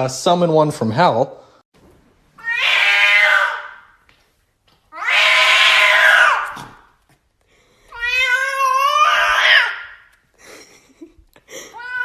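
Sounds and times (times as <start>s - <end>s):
cat yowling: 2.4s - 4.0s, 4.9s - 6.8s, 7.9s - 10.1s, 11.7s - 12.0s.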